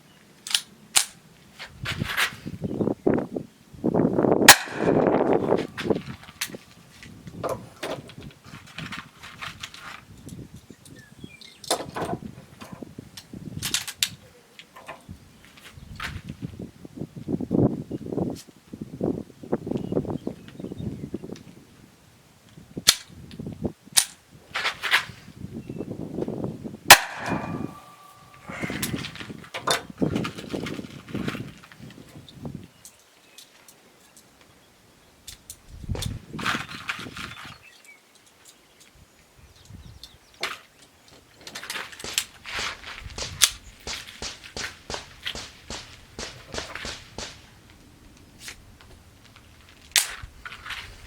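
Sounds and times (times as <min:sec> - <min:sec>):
sharp launcher cracks: 0:04.5 - 0:05.3, 0:26.9 - 0:28.5, 0:42.0 - 0:47.8
rustling and handling noise: 0:05.4 - 0:10.7, 0:27.9 - 0:34.6.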